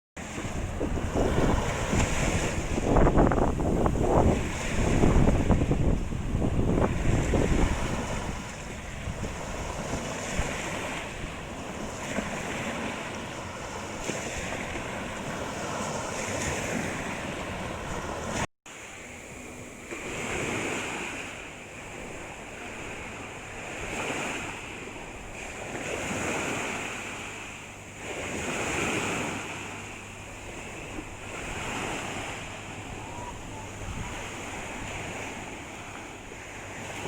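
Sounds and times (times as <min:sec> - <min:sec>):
wind buffeting microphone: 0:00.2 - 0:18.5, 0:30.7 - 0:36.1
sea waves breaking on shore: 0:00.2 - 0:37.0.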